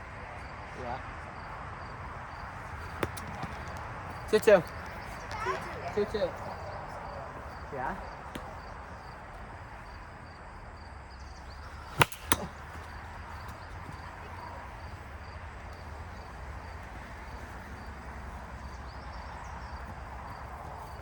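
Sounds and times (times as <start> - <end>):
outdoor background noise: 0.0 - 21.0
plastic ball hitting plastic bat: 2.9 - 3.9, 8.2 - 8.7, 11.8 - 13.0.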